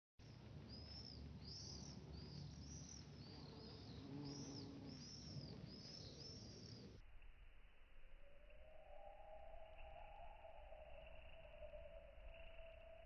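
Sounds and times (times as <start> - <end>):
small bird chirping: 0.2 - 7.0.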